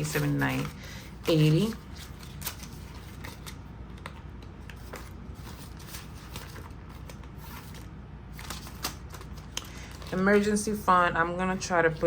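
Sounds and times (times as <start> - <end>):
paper banknotes rustling: 0.0 - 10.9.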